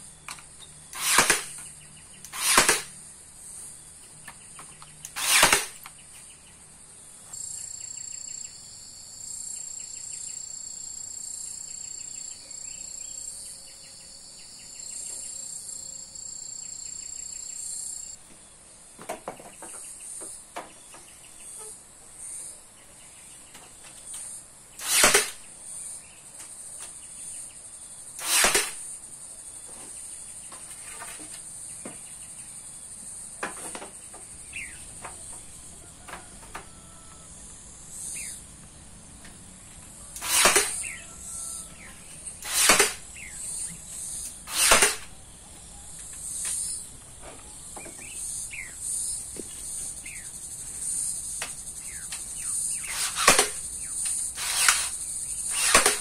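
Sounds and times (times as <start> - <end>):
insect trill: 0.0 - 18.2, 21.3 - 56.0
loud short swishes: 1.0 - 1.6, 2.3 - 2.9, 5.1 - 5.8, 24.8 - 25.4, 28.2 - 28.8, 40.2 - 41.0, 42.4 - 43.0, 44.5 - 45.1, 52.8 - 53.6.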